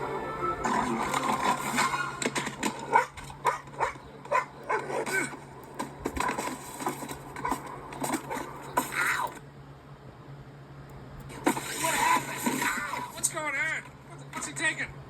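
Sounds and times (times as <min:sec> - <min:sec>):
clattering sound effects: 0:00.6 - 0:03.4, 0:04.2 - 0:09.4
dog barking: 0:02.8 - 0:05.3, 0:07.4 - 0:08.5.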